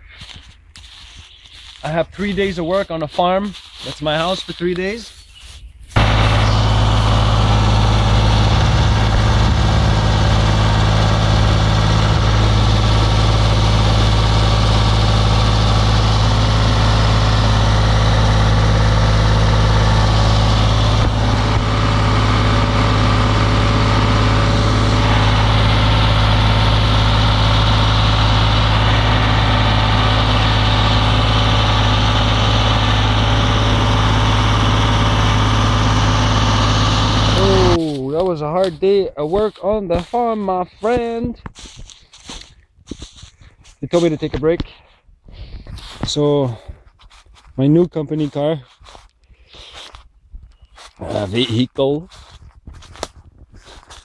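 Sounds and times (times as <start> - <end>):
vehicle engine humming: 5.9 - 44.4.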